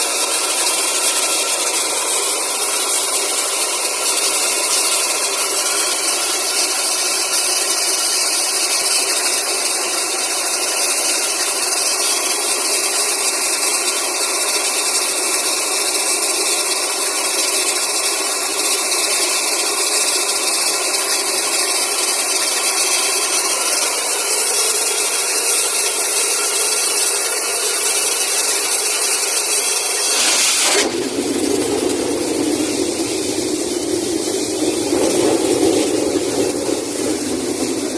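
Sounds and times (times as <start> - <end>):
air compressor running: 0.0 - 37.9
rush of air and water: 29.9 - 37.9.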